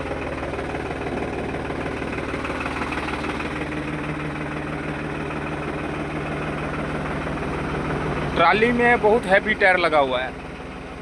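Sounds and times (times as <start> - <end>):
tractor diesel engine idling: 0.0 - 11.0.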